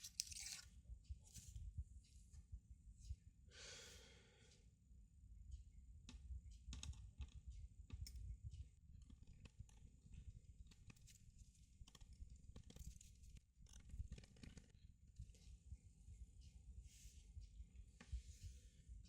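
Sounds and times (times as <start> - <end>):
small clicks and taps: 6.0 - 9.9.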